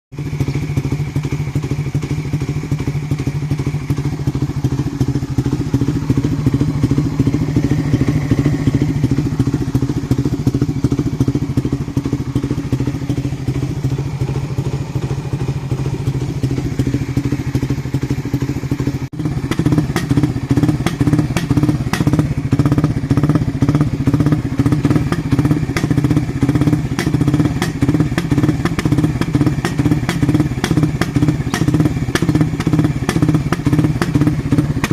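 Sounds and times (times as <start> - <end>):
motorcycle engine idling: 0.1 - 34.9.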